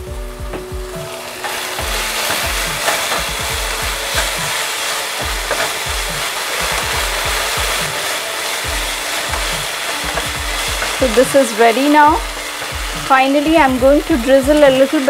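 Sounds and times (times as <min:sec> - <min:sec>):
background music with low beat: 0:00.0 - 0:15.0
chicken sizzling in a hot pan: 0:00.0 - 0:15.0
spatula stirring and scraping: 0:01.4 - 0:15.0.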